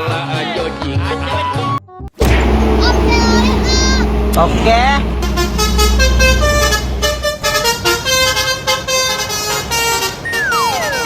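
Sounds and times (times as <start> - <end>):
low engine rumble: 2.2 - 11.0
multi-tone bus horn melody: 2.2 - 11.0
whistle-like tone gliding down: 10.2 - 11.0.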